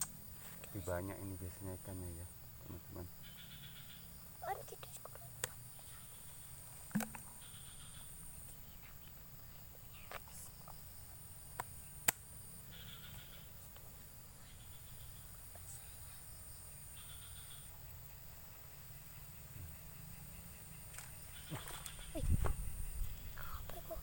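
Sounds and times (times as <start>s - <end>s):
high insect buzzing: 2.9s - 9.0s, 11.8s - 13.8s, 19.7s - 24.0s
short chirping calls: 20.9s - 24.0s.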